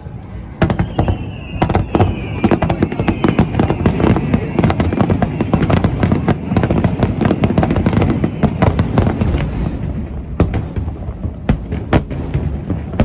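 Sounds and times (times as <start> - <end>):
fireworks crackling and booming: 0.0 - 13.0
fireworks rumble: 0.0 - 13.0.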